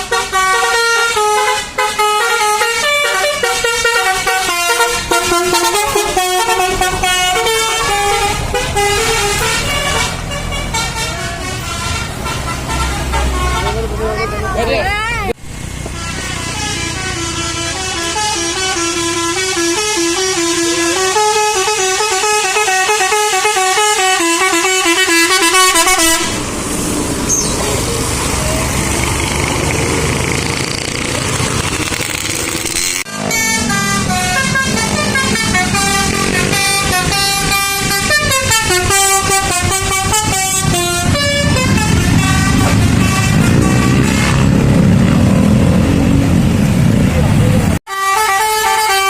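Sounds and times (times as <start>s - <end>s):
bus horn playing a tune: 0.0s - 14.3s, 15.9s - 26.5s, 32.6s - 45.3s, 47.8s - 49.0s
engine and road noise: 0.0s - 49.0s.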